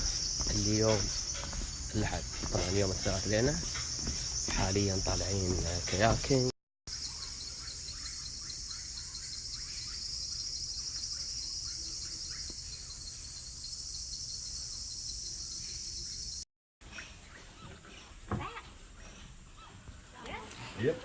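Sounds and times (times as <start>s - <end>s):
insect chorus buzzing: 0.0s - 16.4s
quiet forest ambience: 0.0s - 21.0s
faint bird chirps: 6.9s - 19.8s.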